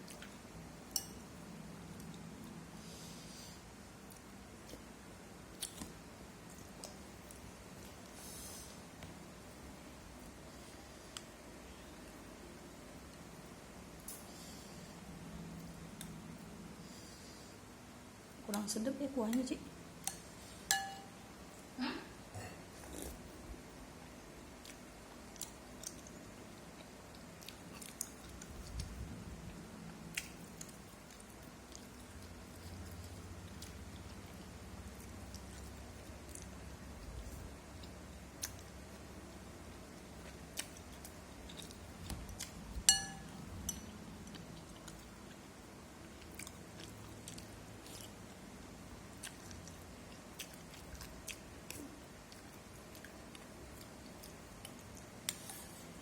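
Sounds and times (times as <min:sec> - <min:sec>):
person chewing: 0:05.5 - 0:08.2, 0:22.7 - 0:23.3, 0:24.5 - 0:56.0.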